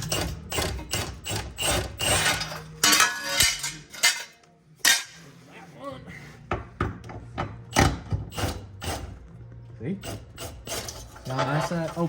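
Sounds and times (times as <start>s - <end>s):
hand ratchet rasping: 10.0s - 12.0s.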